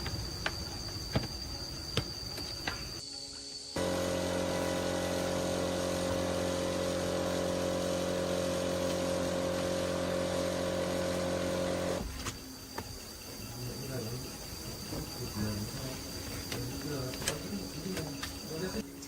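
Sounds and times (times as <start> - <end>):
small engine running steadily: 3.8 - 12.1.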